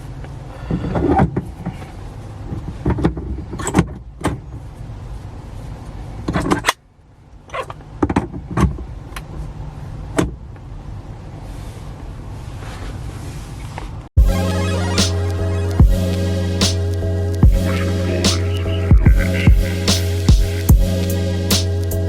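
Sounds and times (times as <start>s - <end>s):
steady low hum: 14.2s - 22.0s.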